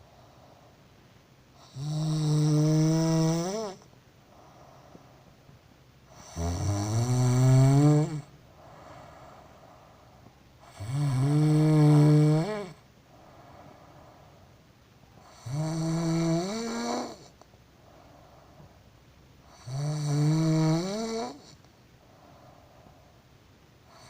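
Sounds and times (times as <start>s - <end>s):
soft breathing: 0.0s - 1.3s, 3.7s - 6.3s, 8.2s - 10.8s, 12.8s - 15.3s, 17.2s - 19.6s, 21.4s - 24.0s
loud snoring: 1.6s - 3.9s, 6.1s - 9.0s, 10.6s - 12.8s, 15.2s - 17.4s, 19.5s - 21.6s.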